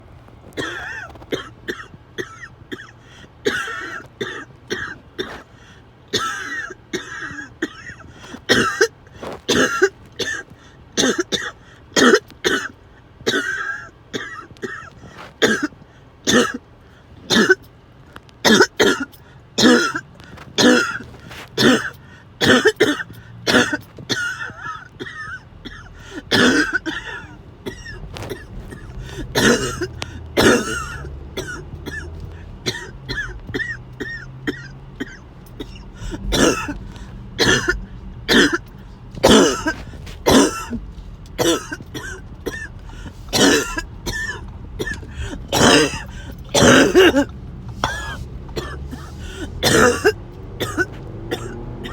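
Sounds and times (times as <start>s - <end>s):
person coughing harshly: 0.6s - 5.5s, 6.1s - 16.6s, 17.3s - 17.6s, 18.4s - 51.9s.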